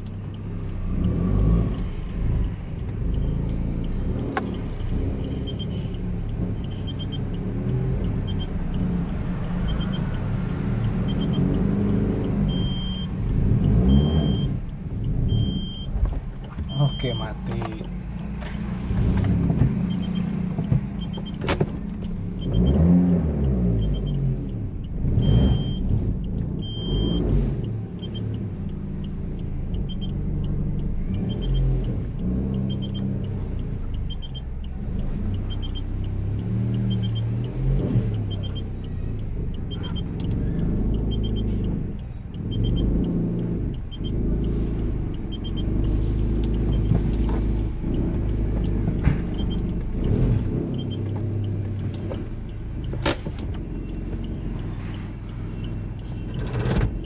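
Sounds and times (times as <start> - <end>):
car engine reversing: 0.0 - 57.0
high electronic beeps: 11.0 - 14.6, 16.6 - 17.4, 25.2 - 25.9, 26.6 - 27.3.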